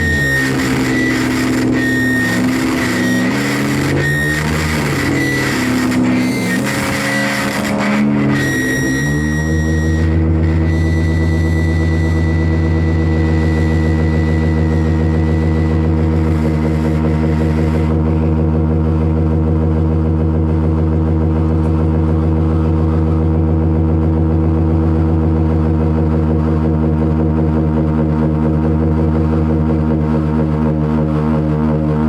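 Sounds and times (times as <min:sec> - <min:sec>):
thin high whistling tone: 0:00.0 - 0:17.9
low electronic drone: 0:00.0 - 0:32.0.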